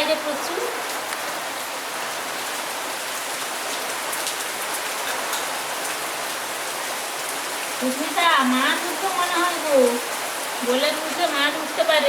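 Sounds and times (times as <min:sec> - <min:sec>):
heavy rain falling: 0:00.0 - 0:12.0.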